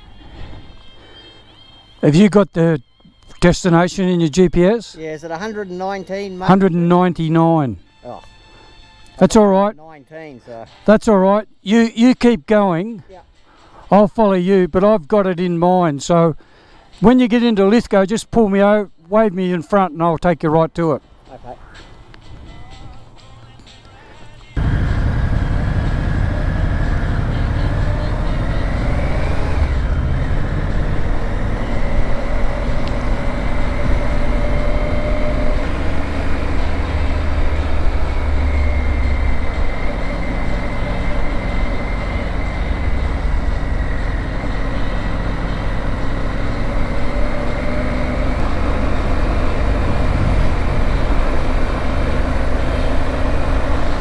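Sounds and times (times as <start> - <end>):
road noise: 3.2 - 9.5, 20.8 - 54.0
motorcycle engine drone: 24.6 - 54.0
wind noise: 49.6 - 51.6.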